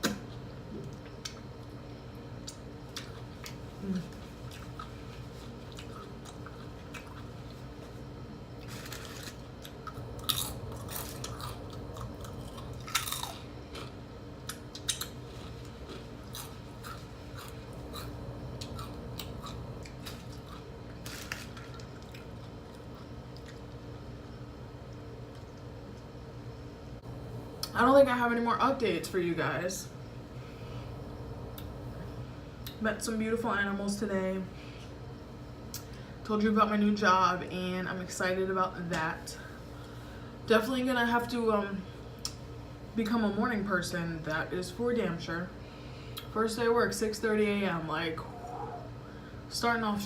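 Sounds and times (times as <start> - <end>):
background hum: 0.0 - 50.0
person chewing food: 2.4 - 8.0, 8.6 - 23.8.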